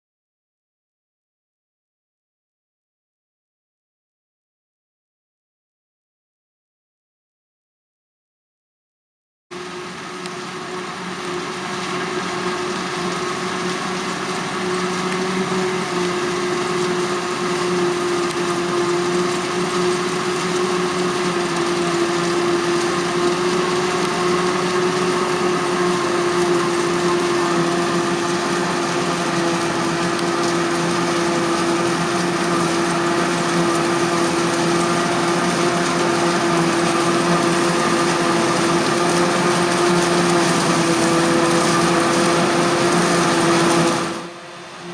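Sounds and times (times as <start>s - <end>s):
forage harvester whining: 9.6s - 44.9s.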